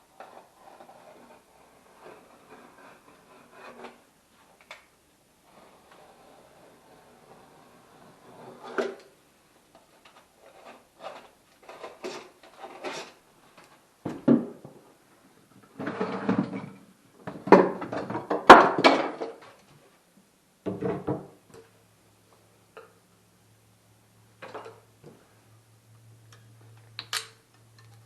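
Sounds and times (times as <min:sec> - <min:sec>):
objects knocking and clattering: 0:11.7 - 0:14.8, 0:15.8 - 0:19.6, 0:24.4 - 0:25.2.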